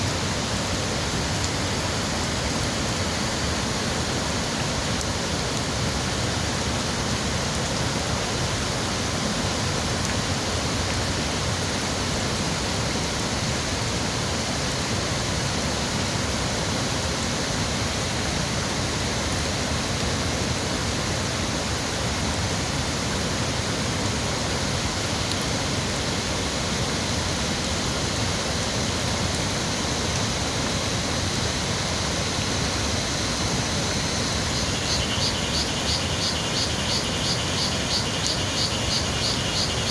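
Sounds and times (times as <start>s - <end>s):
waterfall rushing: 27.0s - 39.9s.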